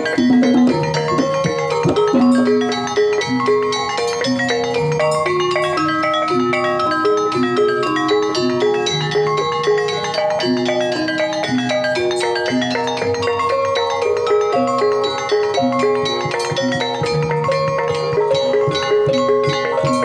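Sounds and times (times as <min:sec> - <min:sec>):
gamelan music: 0:00.0 - 0:20.0.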